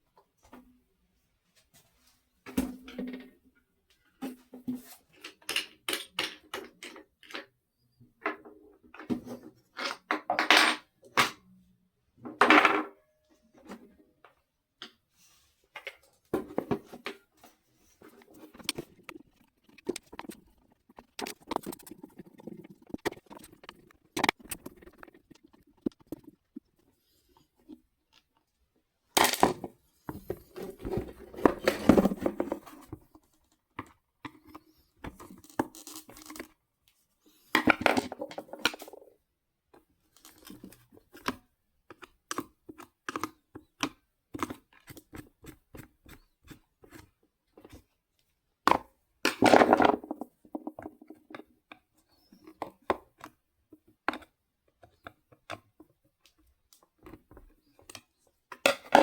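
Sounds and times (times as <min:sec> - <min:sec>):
plastic parts and tools clicking: 0:05.1 - 0:07.5, 0:15.8 - 0:28.5.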